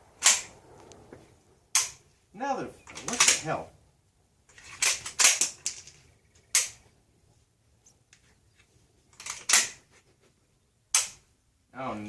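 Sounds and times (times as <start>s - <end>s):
shotgun action clicking: 2.9s - 3.4s, 6.4s - 6.8s, 10.9s - 11.2s.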